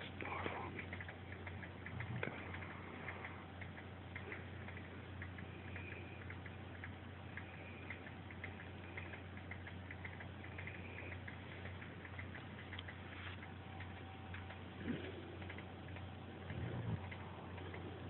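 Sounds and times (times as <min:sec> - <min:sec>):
dog snoring softly: 0:16.5 - 0:18.0.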